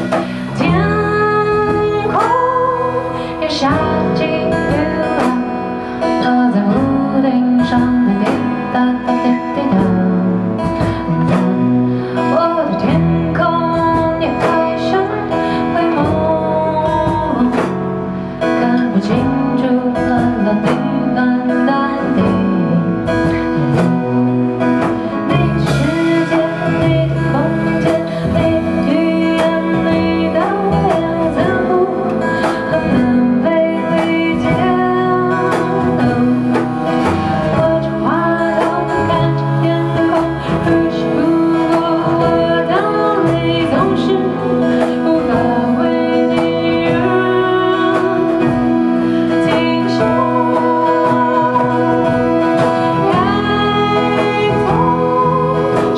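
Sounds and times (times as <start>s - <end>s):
acoustic guitar strummed: 0.0s - 55.9s
person singing: 0.0s - 55.9s.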